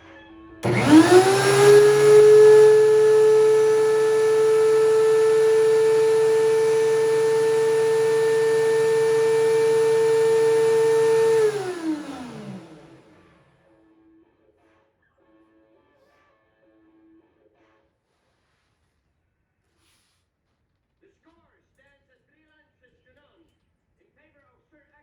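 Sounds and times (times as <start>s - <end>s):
thickness planer whining: 0.6s - 13.3s.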